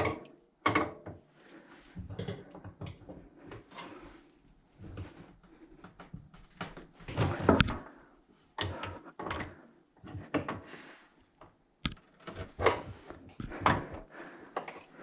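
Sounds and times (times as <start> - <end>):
objects knocking and clattering: 0.0 - 1.2, 2.0 - 3.7, 11.4 - 15.0.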